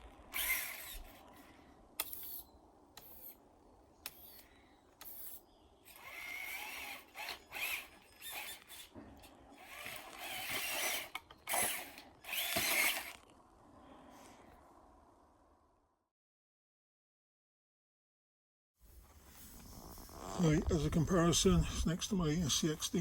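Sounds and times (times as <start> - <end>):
toy car electric motor whirring: 0.0 - 3.4, 4.0 - 13.3.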